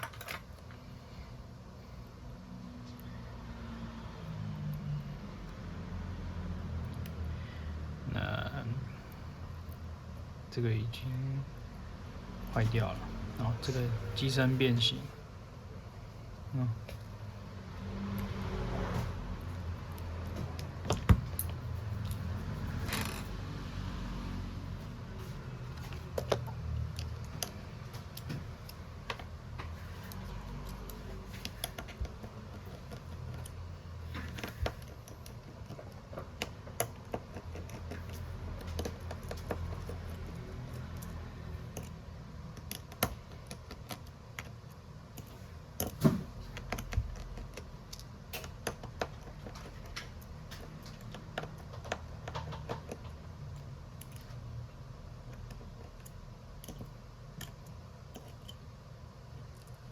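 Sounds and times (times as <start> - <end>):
hand tools clicking and tapping: 25.7 - 53.3.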